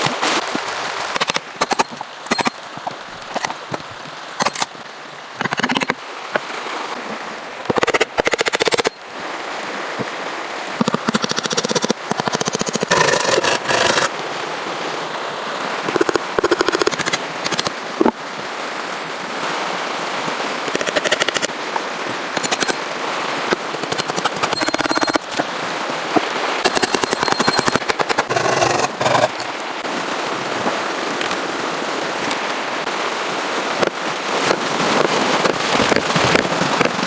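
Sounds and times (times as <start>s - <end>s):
saw rasping through wood: 11.1s - 14.1s, 23.7s - 25.4s, 26.6s - 29.5s
steady rushing background: 20.3s - 29.6s.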